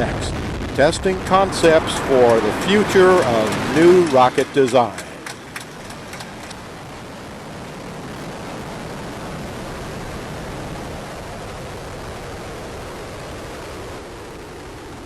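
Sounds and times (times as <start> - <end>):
faint crackles: 0.0 - 15.0
rocket motor roaring: 0.0 - 15.0.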